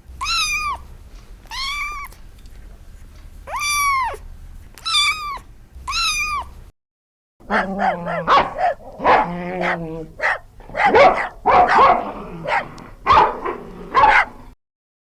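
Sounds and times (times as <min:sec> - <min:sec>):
cat meowing: 0:00.0 - 0:02.2, 0:03.5 - 0:06.7.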